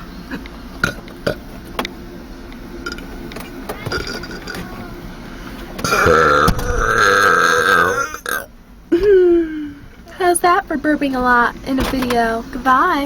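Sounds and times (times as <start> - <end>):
long loud burp: 0.8 - 1.4, 3.9 - 4.6, 5.8 - 8.5.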